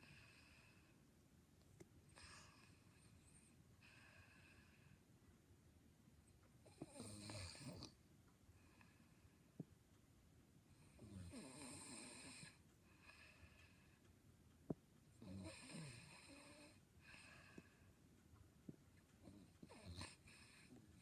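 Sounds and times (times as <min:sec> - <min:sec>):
person snoring faintly: 0:06.6 - 0:08.0, 0:10.8 - 0:13.9, 0:15.2 - 0:17.8, 0:19.2 - 0:21.0.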